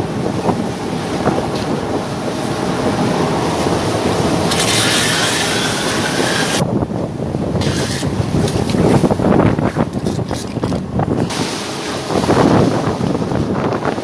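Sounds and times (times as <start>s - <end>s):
waves surging against ship hull: 0.0s - 14.0s
wind buffeting microphone: 0.0s - 14.0s
rushing hiss of breaking water: 3.5s - 6.6s, 11.3s - 12.9s.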